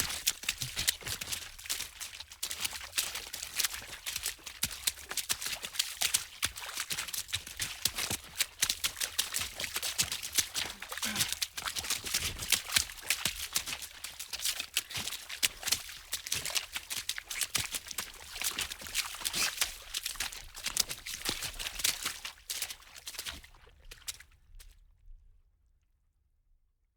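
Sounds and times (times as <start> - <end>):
water splashing: 6.2 - 24.1.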